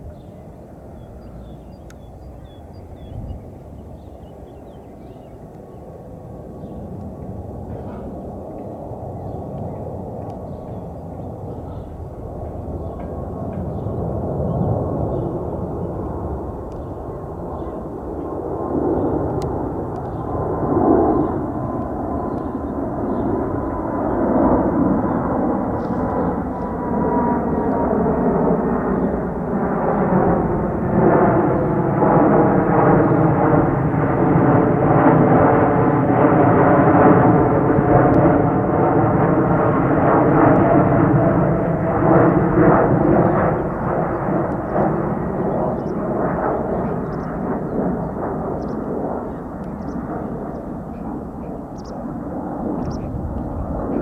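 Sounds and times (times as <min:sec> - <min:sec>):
jet aircraft taking off: 0:00.1 - 0:54.0.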